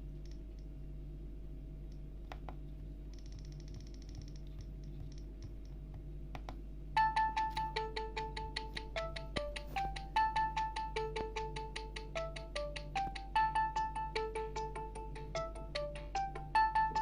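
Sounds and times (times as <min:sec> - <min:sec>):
beeping phone ringtone melody: 0:07.0 - 0:17.0.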